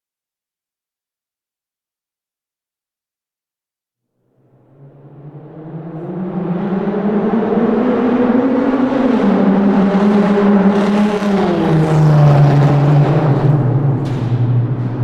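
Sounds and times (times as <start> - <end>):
car engine in a tunnel: 4.2 - 15.0.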